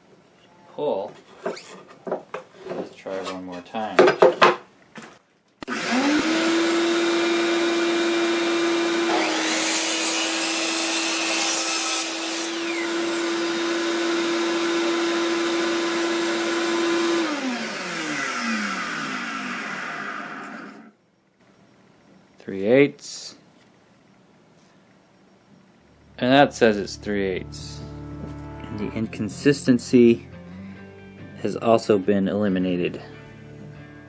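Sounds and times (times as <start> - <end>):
saw motor whine: 5.6 - 21.0
saw blade cutting board: 5.7 - 20.8.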